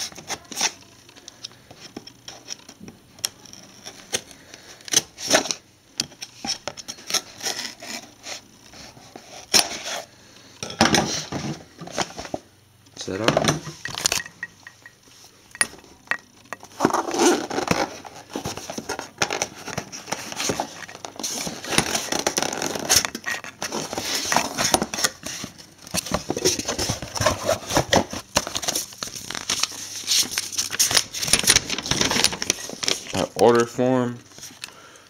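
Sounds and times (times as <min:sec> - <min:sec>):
packaging crinkling and tearing: 0:16.8 - 0:33.7.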